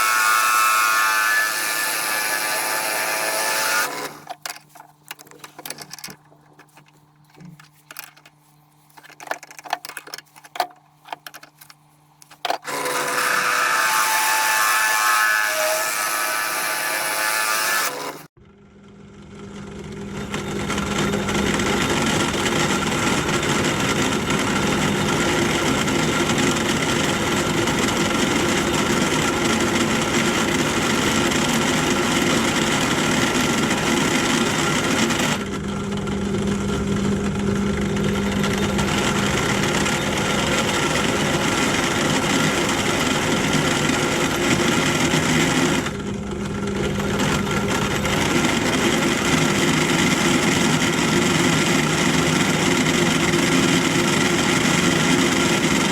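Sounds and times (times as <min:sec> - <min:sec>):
pillar drill cutting steel: 0:00.0 - 0:04.4, 0:12.4 - 0:18.3
motor hum: 0:01.9 - 0:14.8.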